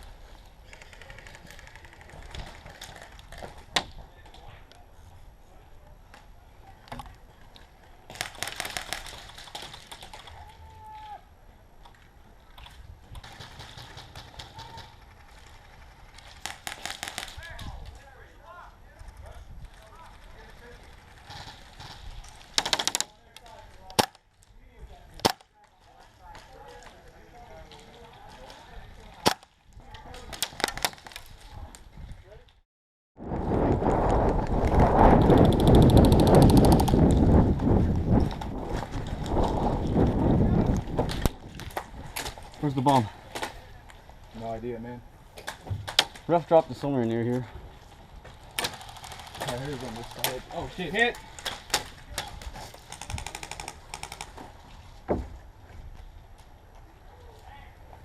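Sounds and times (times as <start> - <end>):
rapid clicks and cracks: 0.6 - 3.7, 33.8 - 37.4, 48.2 - 54.8
airsoft guns firing: 8.1 - 10.3, 13.2 - 17.6, 21.0 - 23.1, 48.5 - 50.4, 51.4 - 54.4.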